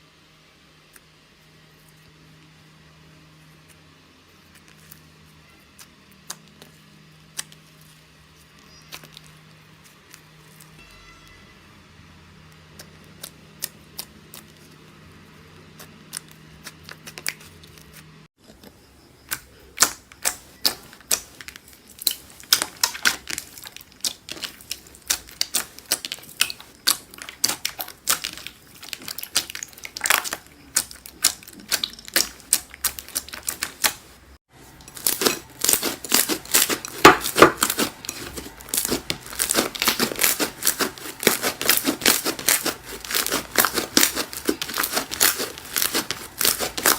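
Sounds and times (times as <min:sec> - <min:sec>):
slime clicking and crackling: 0:19.3 - 0:34.2, 0:34.8 - 0:46.9.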